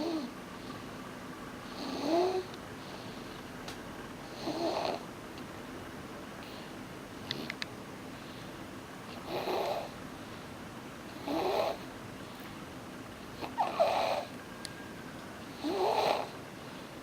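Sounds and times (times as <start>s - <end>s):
baby snoring: 0.0s - 0.3s, 1.6s - 3.1s, 4.3s - 5.1s, 9.1s - 10.0s, 11.1s - 11.9s, 13.4s - 14.3s, 15.5s - 16.4s
quiet breathing: 0.0s - 3.6s, 6.4s - 14.6s, 15.4s - 17.0s.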